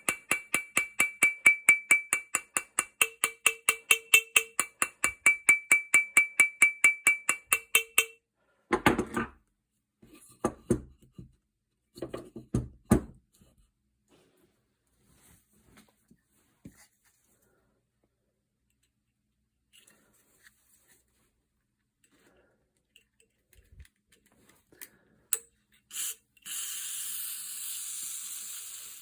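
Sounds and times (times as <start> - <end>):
hammer tapping on ringing steel: 0.0 - 8.2
irregular knocks and handling: 8.7 - 13.6.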